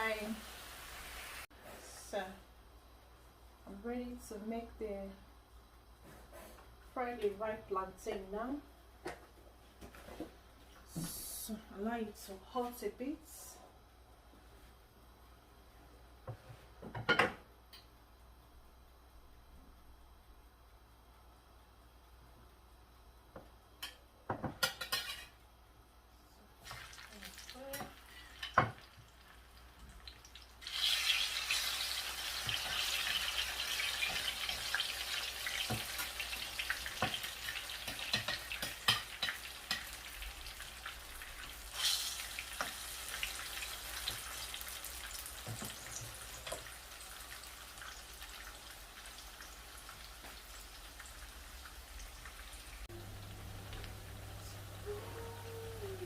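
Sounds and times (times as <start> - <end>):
frying in hot oil sizzling: 0.0 - 1.5, 24.6 - 25.3, 26.6 - 54.2.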